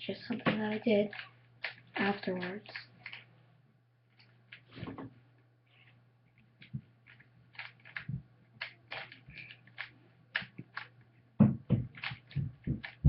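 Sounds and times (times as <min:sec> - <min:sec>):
puzzle cube clicking: 0:06.6 - 0:11.0, 0:11.9 - 0:13.0.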